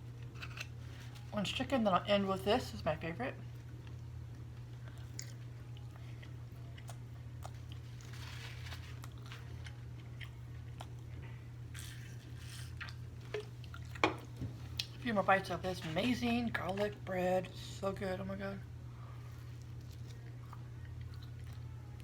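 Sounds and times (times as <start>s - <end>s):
person chewing and crunching: 4.7s - 14.0s, 19.4s - 22.0s.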